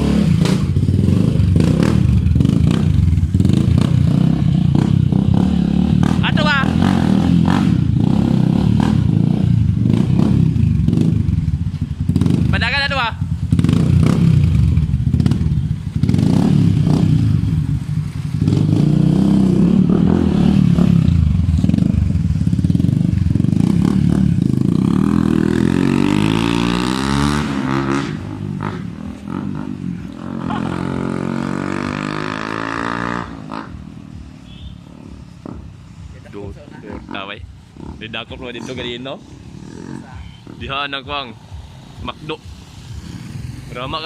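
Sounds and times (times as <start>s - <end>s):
motorcycle engine revving: 0.0s - 44.0s.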